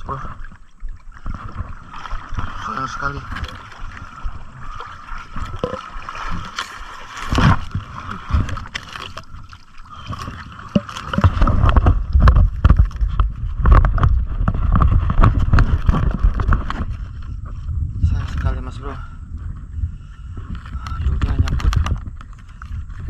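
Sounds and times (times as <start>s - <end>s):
water sloshing and splashing: 0.0s - 23.0s
heavy low rumble: 10.7s - 23.0s.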